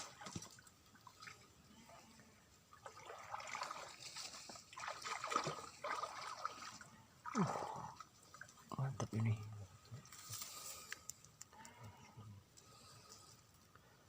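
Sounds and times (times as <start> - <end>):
small water splashes: 0.0 - 8.9
stream water trickling: 0.0 - 11.5.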